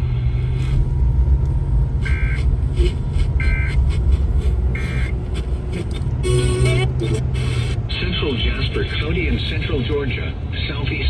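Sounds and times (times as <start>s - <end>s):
steady low rumble: 0.0s - 11.0s
digital data tone bursts: 2.0s - 7.9s.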